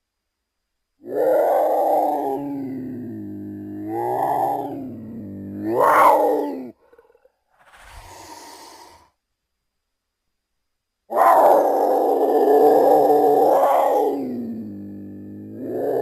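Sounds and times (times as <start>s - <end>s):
big cat growling: 1.1s - 9.1s, 11.6s - 16.0s
big cat breathy huff: 7.6s - 9.1s.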